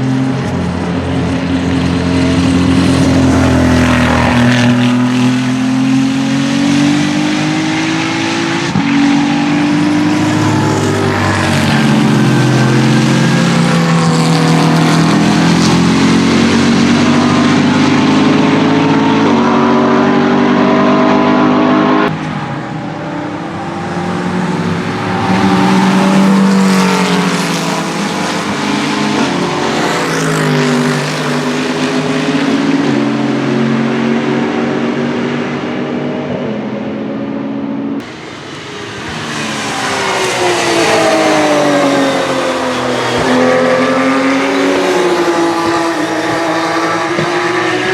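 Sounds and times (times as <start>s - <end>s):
racing car engines passing by: 0.0s - 47.9s.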